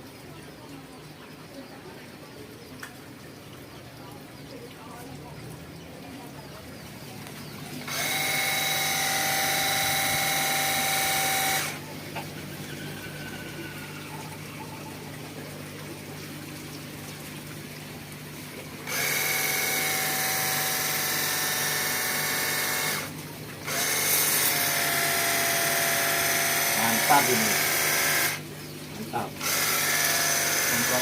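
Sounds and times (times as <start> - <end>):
water jet hissing: 6.8 - 31.0
pressure washer motor whine: 7.2 - 15.4, 18.8 - 28.4, 29.0 - 31.0.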